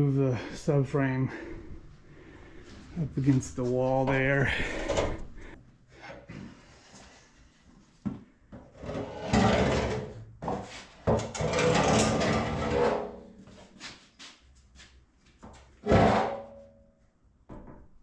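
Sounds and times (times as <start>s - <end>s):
metal frame scraping floor: 8.8s - 13.5s, 15.8s - 16.6s.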